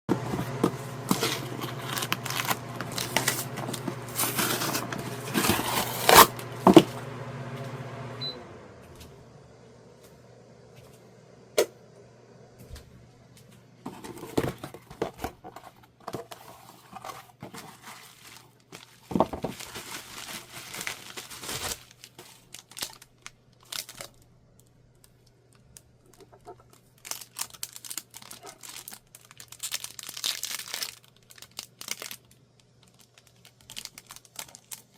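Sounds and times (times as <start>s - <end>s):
plastic wrapping rustling: 0.1s - 7.0s, 13.8s - 34.9s
packaging being torn open: 1.1s - 6.4s, 17.5s - 34.9s.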